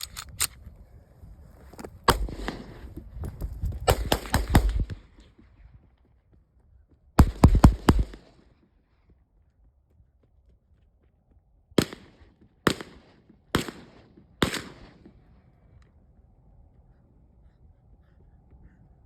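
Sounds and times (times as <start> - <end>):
pistol firing rapidly: 2.1 - 2.9, 3.9 - 5.2, 7.2 - 8.4, 11.8 - 15.2.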